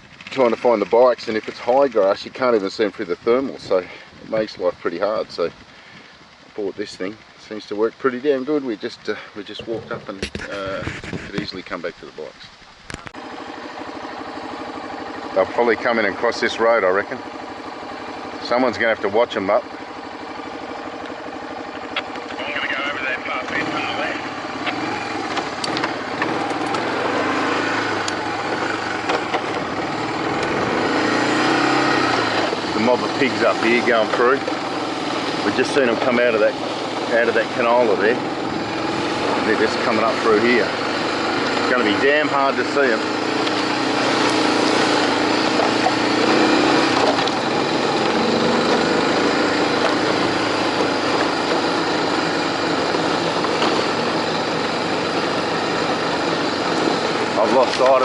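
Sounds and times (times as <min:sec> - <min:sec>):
motorbike engine running: 0:00.0 - 0:11.8, 0:12.9 - 0:58.0
loud rough rushing noise: 0:22.0 - 0:58.0.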